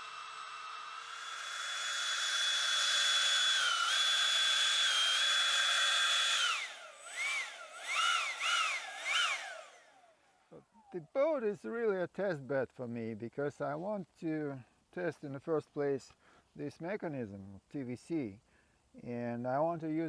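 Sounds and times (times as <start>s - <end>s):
electric ducted fan whining: 0.0s - 10.0s.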